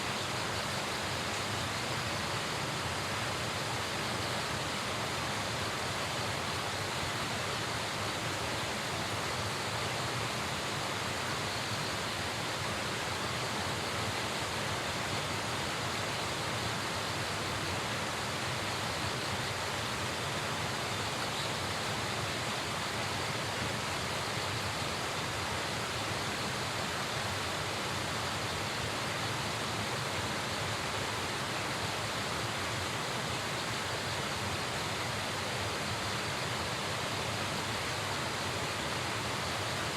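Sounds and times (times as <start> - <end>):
river rushing: 0.0 - 39.9.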